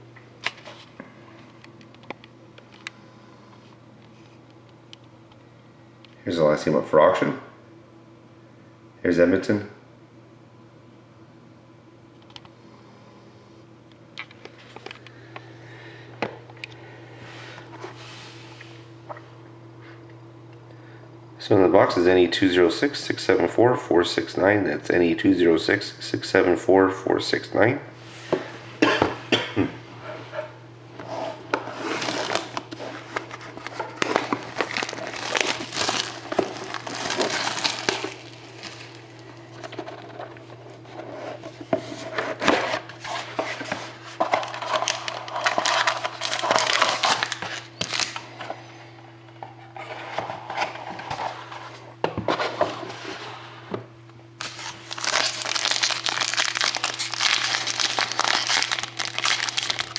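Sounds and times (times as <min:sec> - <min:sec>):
low electrical hum: 0:00.0 - 0:59.9
plastic packaging crinkling and tearing: 0:31.7 - 0:39.8, 0:44.2 - 0:48.2, 0:54.4 - 0:59.9.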